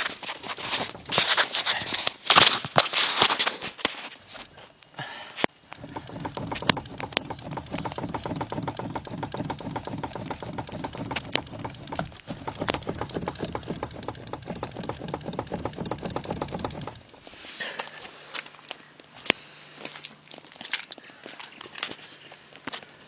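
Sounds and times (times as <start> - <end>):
steering rack knocking: 0.7 - 1.4, 5.8 - 17.1
low steady hum: 4.1 - 23.0.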